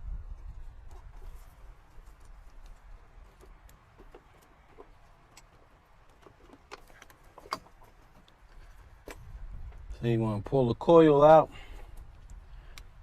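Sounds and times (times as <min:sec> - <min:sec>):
faint clicks and taps of parts: 0:00.8 - 0:09.9, 0:11.9 - 0:13.0.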